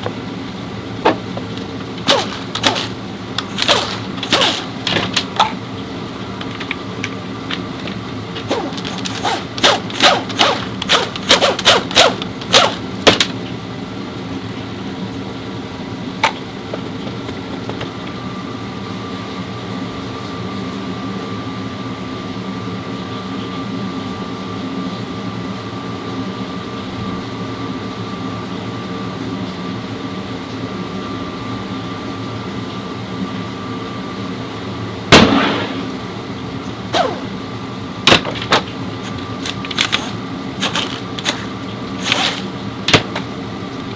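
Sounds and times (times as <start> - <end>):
car engine humming: 1.0 - 5.3, 7.5 - 13.4, 36.9 - 43.3
sharp clicks and knocks: 1.1 - 5.6, 6.4 - 13.4, 38.1 - 43.9.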